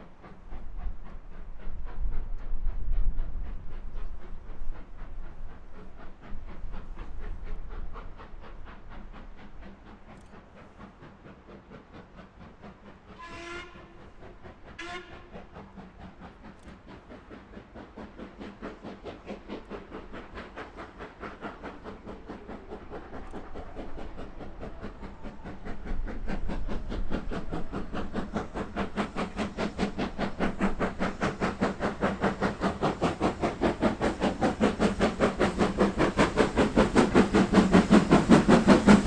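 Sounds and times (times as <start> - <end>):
steam locomotive exhaust beats: 0.0 - 39.0
locomotive whistle blasts: 13.2 - 14.0, 14.8 - 15.3.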